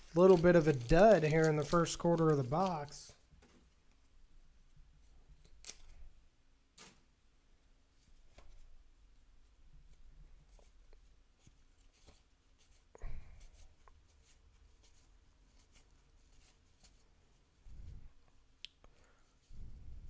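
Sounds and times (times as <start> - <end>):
cards rustling and clicking: 0.0 - 3.6.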